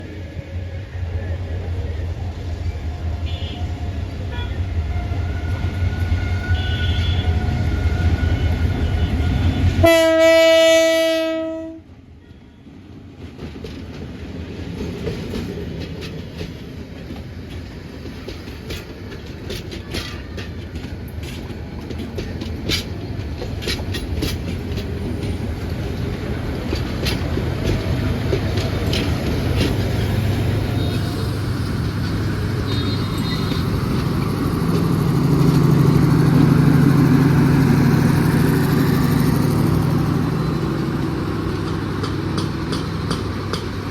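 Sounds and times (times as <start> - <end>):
diesel locomotive rumbling: 0.0 - 43.9
train air horn: 3.3 - 3.7, 4.3 - 11.9, 32.6 - 33.8
train wheels clacking on rails: 13.2 - 43.9.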